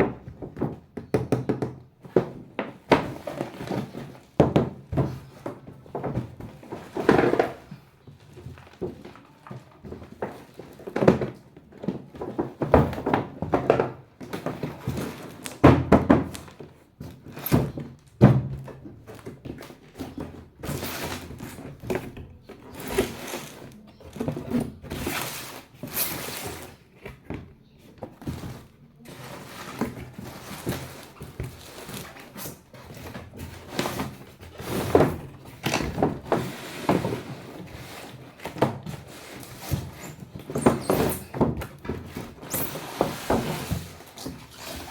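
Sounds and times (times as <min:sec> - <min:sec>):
plastic parts scraping: 0:19.0 - 0:44.9.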